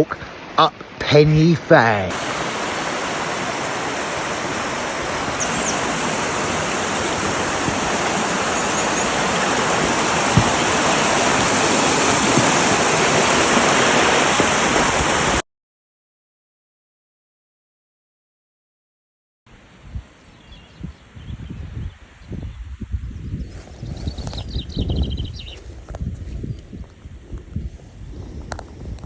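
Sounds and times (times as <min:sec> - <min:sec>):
running water rushing: 0:00.0 - 0:15.4.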